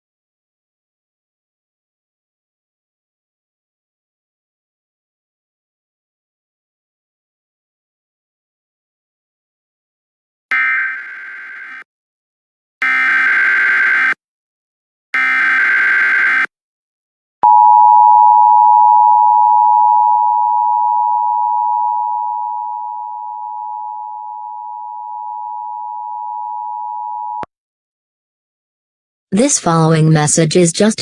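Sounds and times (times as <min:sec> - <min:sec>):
two-tone attention signal: 0:17.4 - 0:27.5.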